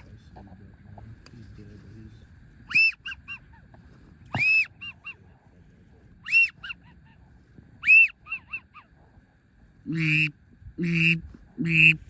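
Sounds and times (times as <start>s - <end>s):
goose call honking: 2.7s - 3.6s, 4.3s - 5.2s, 6.2s - 7.2s, 7.8s - 8.9s, 9.9s - 12.0s
goose call clucks: 2.7s - 3.7s, 4.3s - 5.3s, 6.2s - 8.9s, 9.9s - 12.0s.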